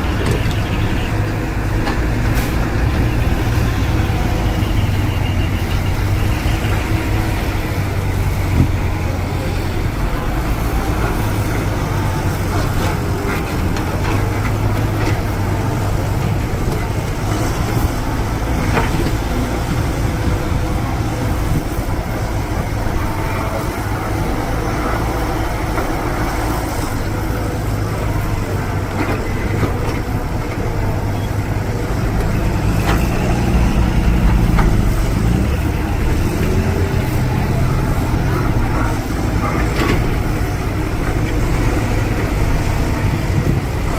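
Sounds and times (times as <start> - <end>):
heavy diesel machinery drone: 0.0 - 43.9.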